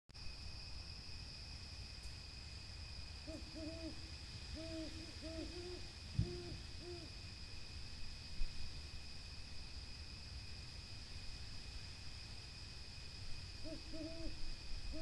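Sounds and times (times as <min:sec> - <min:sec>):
high insect trill: 0:00.1 - 0:15.0
owl hooting: 0:03.2 - 0:07.2, 0:13.6 - 0:15.0.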